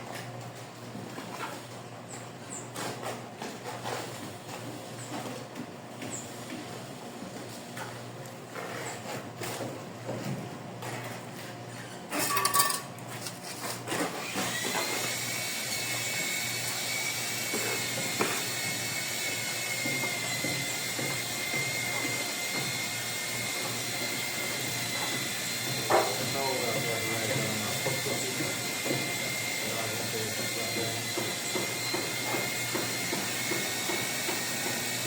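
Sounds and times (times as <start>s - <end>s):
tiles and tools clattering: 12.1s - 13.8s
tile cutter motor whining: 13.9s - 35.0s.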